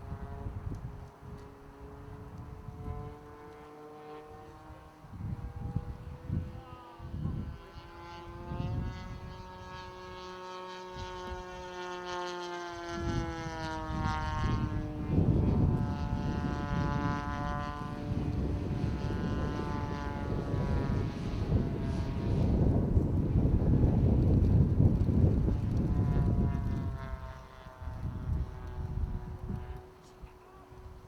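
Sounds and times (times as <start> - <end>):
wind rumble on microphone: 0.0 - 3.6, 4.2 - 31.0
model plane engine: 0.0 - 31.0.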